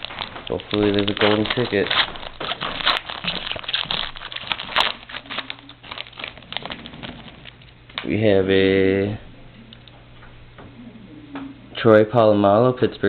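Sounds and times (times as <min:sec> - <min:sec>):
wrapper crinkling and tearing: 0:00.0 - 0:07.8.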